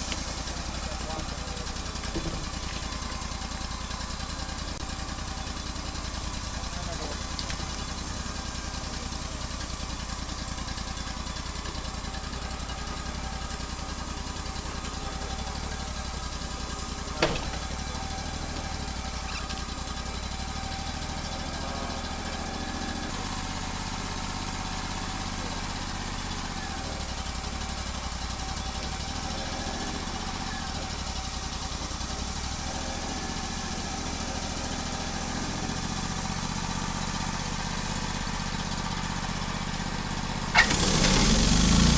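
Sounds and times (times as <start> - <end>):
bandsaw mill cutting log: 40.5 - 41.9.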